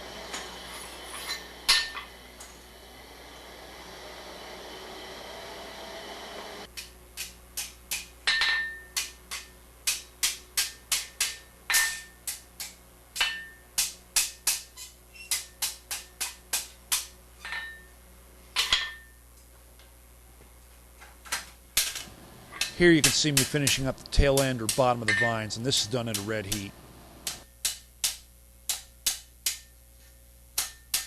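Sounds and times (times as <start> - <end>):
hammer striking steel: 0.3 - 2.6, 7.2 - 14.7, 22.5 - 29.7, 30.6 - 31.0.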